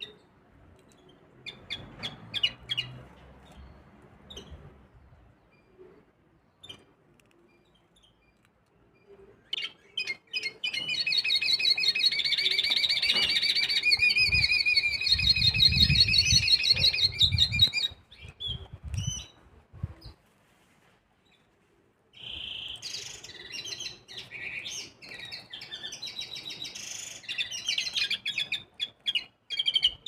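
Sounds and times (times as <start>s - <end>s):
finch singing trilling song: 9.5s - 19.4s, 22.2s - 30.0s.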